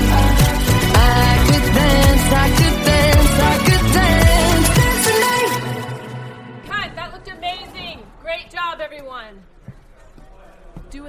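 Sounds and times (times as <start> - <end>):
kick drum: 0.0 - 5.0
dance-pop music: 0.0 - 7.0.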